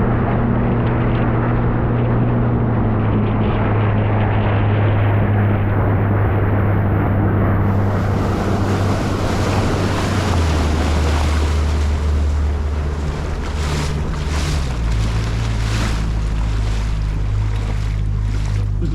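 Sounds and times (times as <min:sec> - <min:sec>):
wind noise on microphone: 0:00.0 - 0:18.8
motorboat engine droning: 0:00.0 - 0:18.9
rushing water: 0:07.6 - 0:18.9.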